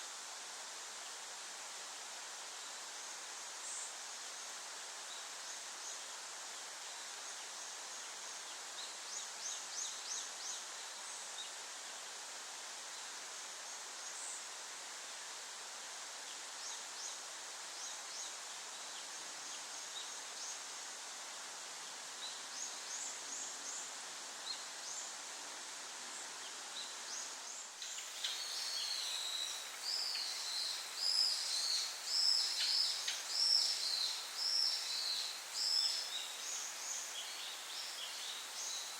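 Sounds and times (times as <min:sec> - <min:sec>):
background hiss: 0:00.0 - 0:38.9
songbirds calling: 0:26.8 - 0:38.9.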